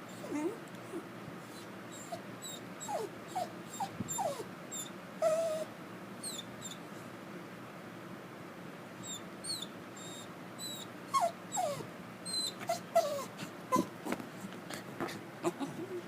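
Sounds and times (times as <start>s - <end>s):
dog whimpering: 0.0s - 6.8s, 9.0s - 14.2s, 15.1s - 16.0s
dog huffing: 12.6s - 16.0s.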